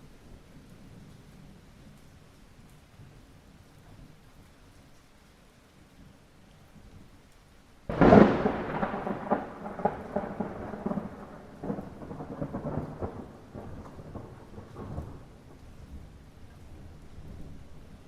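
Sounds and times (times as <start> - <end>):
light rain hiss: 0.0 - 18.0
thunder crackling and rumbling: 7.9 - 18.0.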